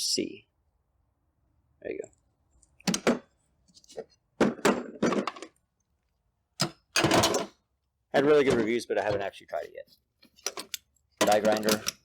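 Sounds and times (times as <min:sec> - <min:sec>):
tools clattering: 0:06.6 - 0:07.6, 0:10.4 - 0:12.0.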